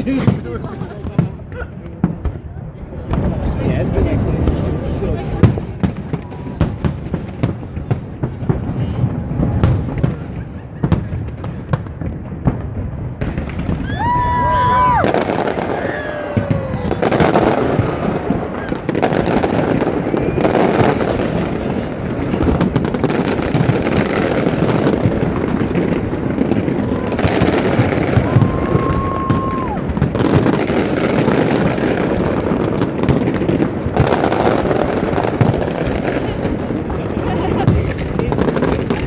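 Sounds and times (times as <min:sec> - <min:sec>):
rumble and crackle of fireworks: 0:00.0 - 0:39.0
high firework whistle: 0:26.9 - 0:30.0.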